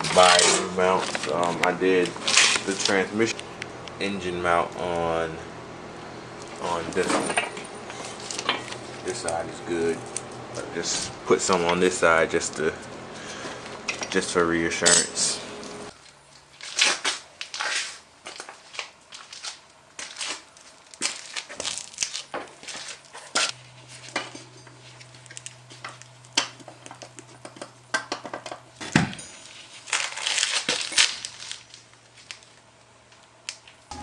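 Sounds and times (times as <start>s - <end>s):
tools and metal parts clinking: 0.0s - 3.0s, 6.4s - 10.4s, 12.5s - 15.4s.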